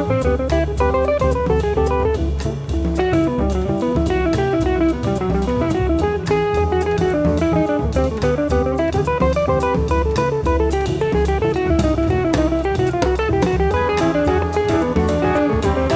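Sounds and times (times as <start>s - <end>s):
bass: 0.0s - 15.9s
drum kit beat: 0.0s - 15.9s
guitar playing single notes: 13.7s - 15.9s.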